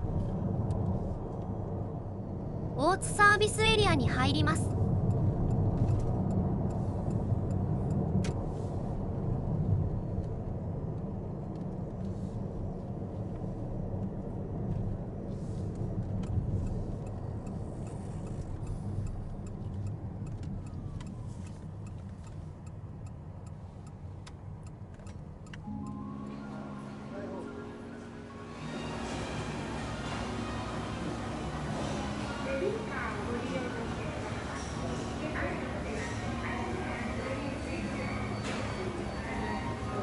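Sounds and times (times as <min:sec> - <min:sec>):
road and tyre rumble: 0:00.0 - 0:02.8, 0:04.1 - 0:40.0
faint ticks: 0:15.6 - 0:25.7.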